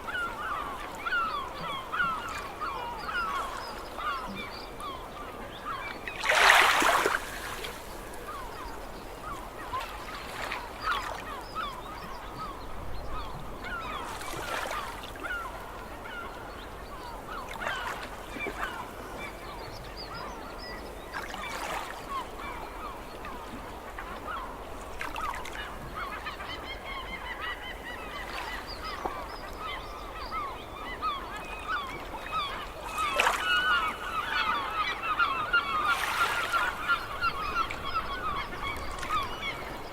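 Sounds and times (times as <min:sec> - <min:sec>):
gulls calling: 0:00.0 - 0:20.4, 0:21.2 - 0:39.9.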